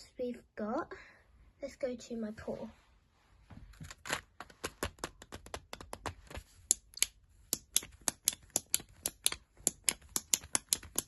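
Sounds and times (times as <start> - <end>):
sharp plastic toy clicks: 6.7 - 11.0.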